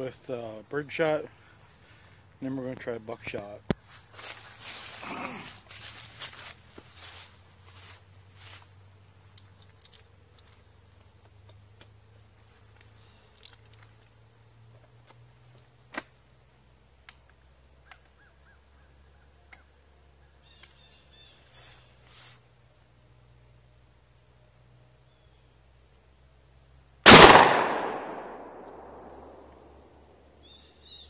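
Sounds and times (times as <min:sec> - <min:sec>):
faint bird calls: 0:17.8 - 0:22.0
shotgun mechanical clicks: 0:27.1 - 0:29.3.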